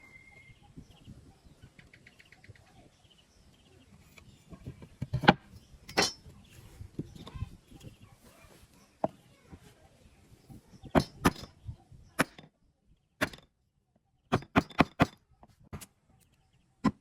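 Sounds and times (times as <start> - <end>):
faint bird chirps: 0.0 - 4.8.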